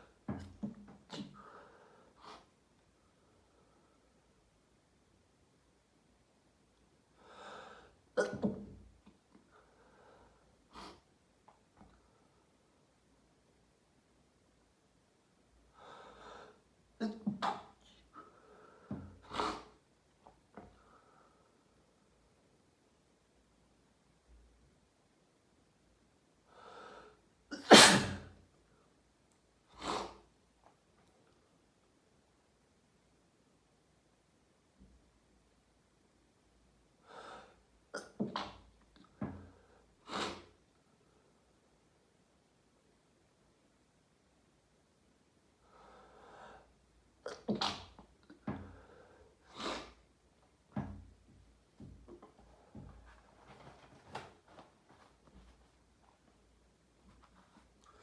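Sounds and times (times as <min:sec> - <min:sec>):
person sneezing: 0:01.1 - 0:01.6, 0:08.2 - 0:08.7, 0:17.0 - 0:18.0, 0:19.2 - 0:19.8, 0:27.5 - 0:28.4, 0:29.8 - 0:30.3, 0:40.0 - 0:40.6, 0:47.2 - 0:48.0, 0:49.4 - 0:50.0
breathy build-up before sneeze: 0:19.2 - 0:19.8, 0:27.5 - 0:28.4, 0:40.0 - 0:40.6, 0:47.2 - 0:48.0, 0:49.4 - 0:50.1
man sneezing: 0:27.5 - 0:28.4.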